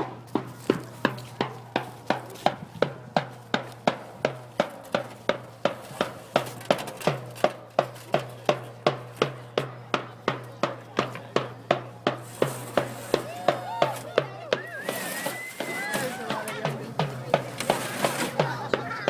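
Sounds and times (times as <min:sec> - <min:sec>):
drum steady beat: 0:00.0 - 0:19.0
voices: 0:00.0 - 0:19.0.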